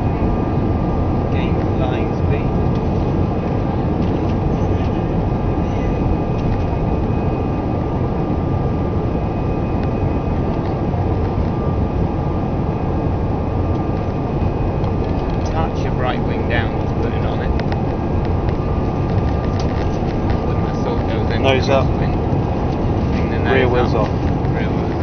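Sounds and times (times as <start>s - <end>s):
jet engines at take-off thrust: 0.0s - 25.0s
whining engine tones: 0.0s - 25.0s.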